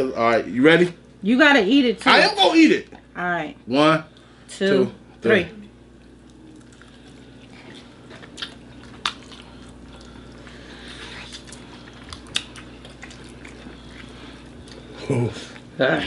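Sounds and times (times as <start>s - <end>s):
people chewing chicken wings: 5.6s - 16.0s
mouth clicks and smacks: 12.1s - 12.7s.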